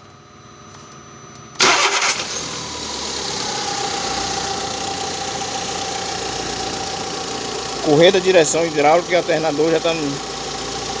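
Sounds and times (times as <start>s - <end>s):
car engine starting and idling: 1.6s - 11.0s
thin steady whine: 2.6s - 11.0s.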